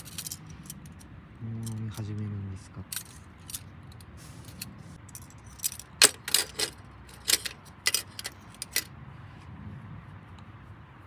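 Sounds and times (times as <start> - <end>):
small hard objects clinking: 0.0 - 0.9, 4.5 - 8.9.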